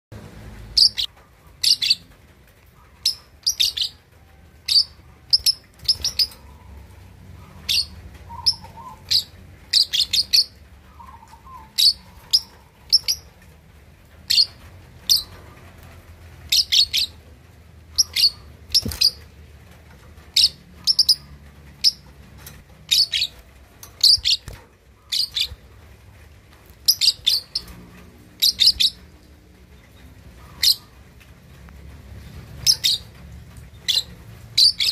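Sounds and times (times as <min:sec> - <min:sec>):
lovebird chirping: 0:00.8 - 0:02.1, 0:03.0 - 0:04.0, 0:04.6 - 0:13.3, 0:17.9 - 0:19.3, 0:24.0 - 0:25.7.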